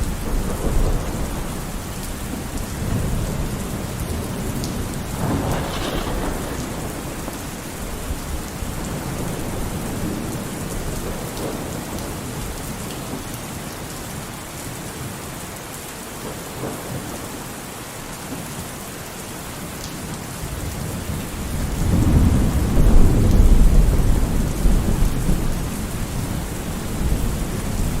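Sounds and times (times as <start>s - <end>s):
thunder rumbling: 0.0s - 12.6s, 20.5s - 28.0s
steady rain falling: 0.0s - 28.0s.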